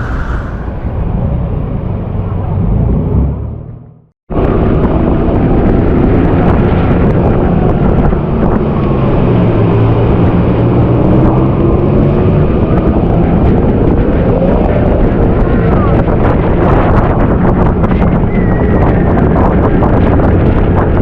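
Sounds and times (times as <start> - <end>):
water noise: 0.0 - 3.4
wind buffeting microphone: 0.0 - 21.0.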